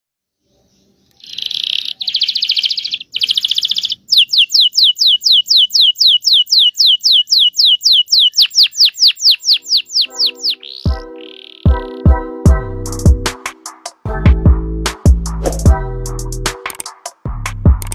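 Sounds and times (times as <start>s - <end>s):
canary singing: 0.6s - 12.4s.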